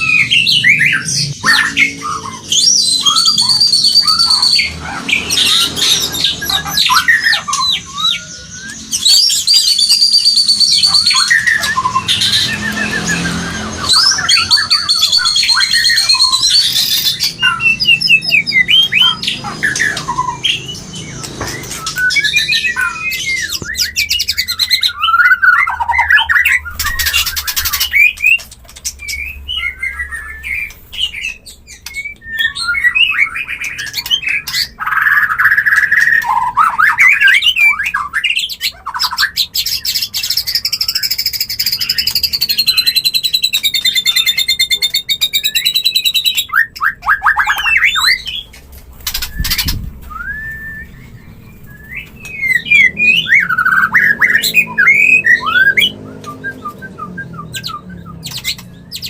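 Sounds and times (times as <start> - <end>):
bird singing whistled trills: 0.0 - 59.0.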